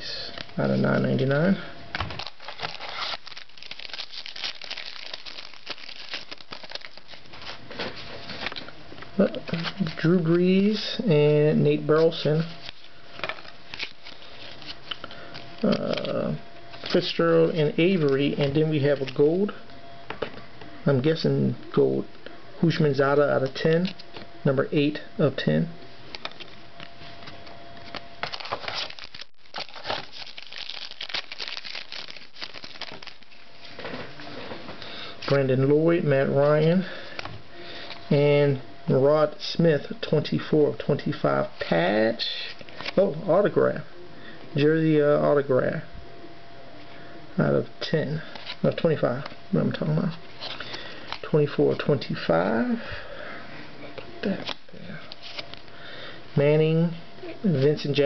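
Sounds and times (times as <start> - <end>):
cards being flipped through: 2.0 - 8.6, 27.8 - 33.4
foil wrapper crinkling and tearing: 2.1 - 7.6, 12.6 - 15.0, 28.2 - 33.8.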